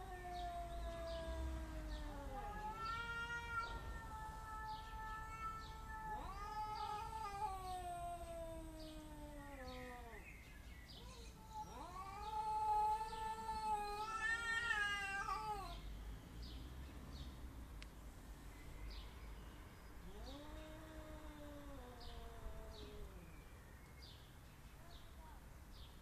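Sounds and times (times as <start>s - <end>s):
cats yowling: 0.0s - 10.3s, 11.0s - 15.8s, 20.0s - 23.3s.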